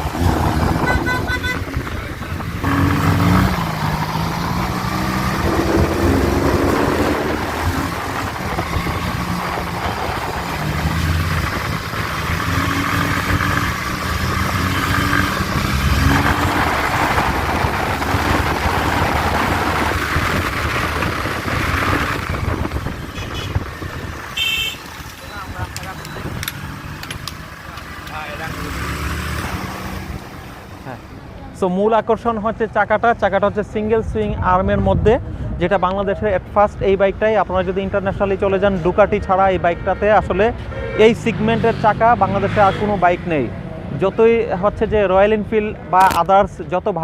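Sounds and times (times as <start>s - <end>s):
motorcycle engine accelerating: 0.0s - 31.1s
wind on microphone: 15.3s - 24.4s.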